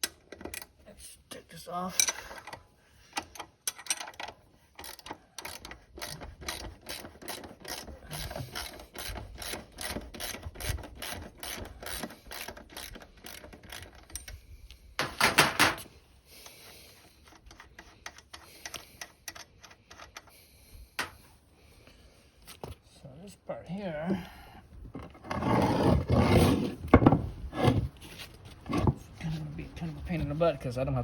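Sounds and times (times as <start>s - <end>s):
ratchet wrench clicking: 4.8s - 7.9s.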